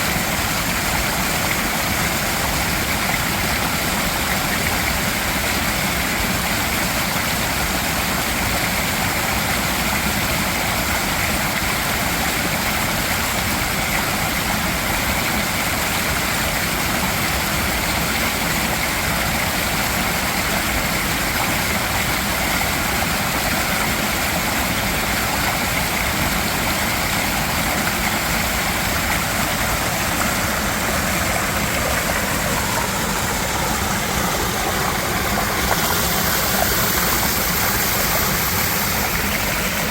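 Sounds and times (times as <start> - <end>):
water rushing over rocks: 0.0 - 39.9.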